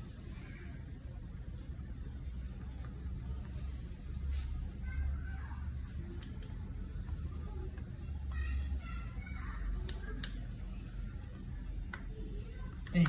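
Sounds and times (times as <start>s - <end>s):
pen scratching on paper: 0.0s - 0.5s, 1.8s - 10.0s, 11.2s - 11.5s
faint background voices: 0.0s - 13.0s.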